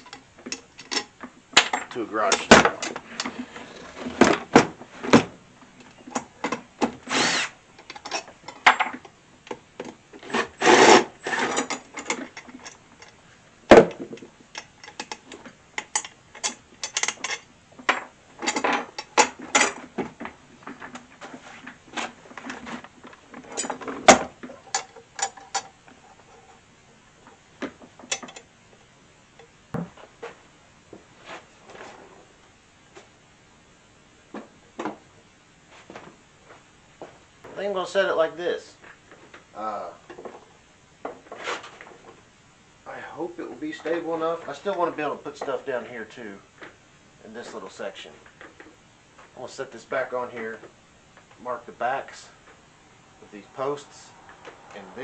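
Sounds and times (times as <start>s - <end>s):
cordless drill driving screws: 7.1s - 7.6s.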